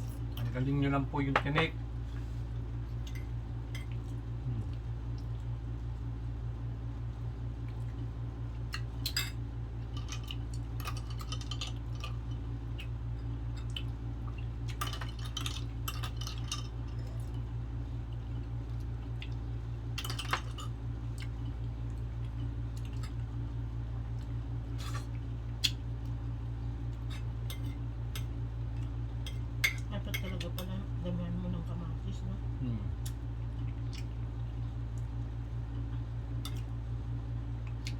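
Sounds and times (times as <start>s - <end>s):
steady low hum: 0.0s - 37.9s
wet mouth and food noises: 3.9s - 6.0s, 12.6s - 14.8s, 21.1s - 26.3s, 32.9s - 36.8s.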